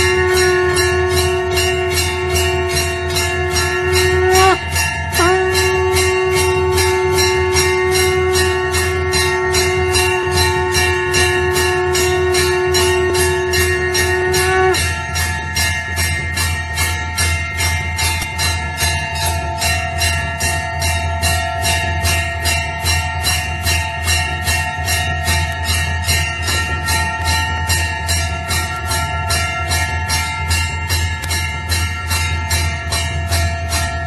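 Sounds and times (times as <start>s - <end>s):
conch shell note: 0.0s - 15.7s
temple bells ringing: 0.0s - 34.0s.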